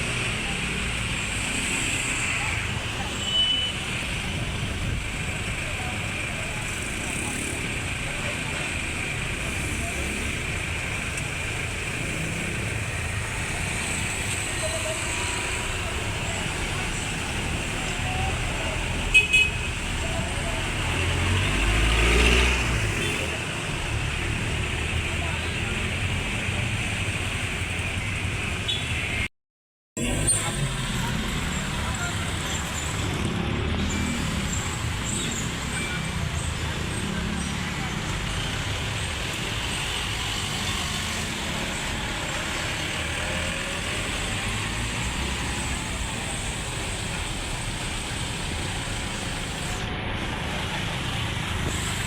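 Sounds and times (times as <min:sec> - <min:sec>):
traffic rumble: 0:00.0 - 0:29.3, 0:30.0 - 0:52.0
passing vehicle engine: 0:20.0 - 0:26.6.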